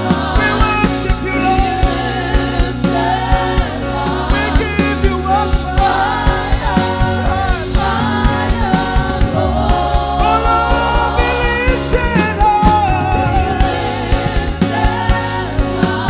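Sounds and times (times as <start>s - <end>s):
gospel band with drum beat: 0.0s - 16.0s
singers holding long notes: 0.0s - 16.0s.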